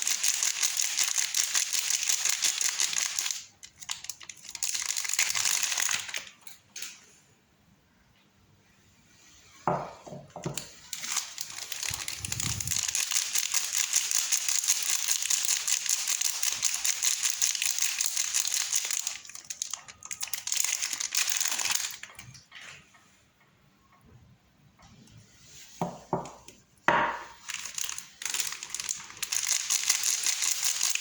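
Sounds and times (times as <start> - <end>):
soap wrapper crinkling: 0.0 - 6.4, 10.8 - 22.5, 27.3 - 31.0.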